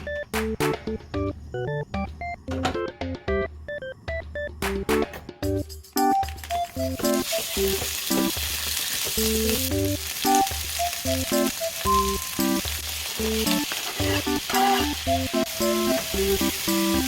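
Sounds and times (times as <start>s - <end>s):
background music: 0.0s - 17.0s
meat sizzling in a hot pan: 6.8s - 17.0s.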